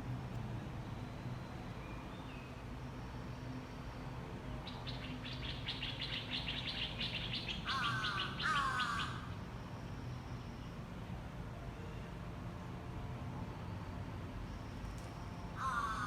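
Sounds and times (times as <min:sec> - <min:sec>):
bird chirping: 0:04.7 - 0:09.2.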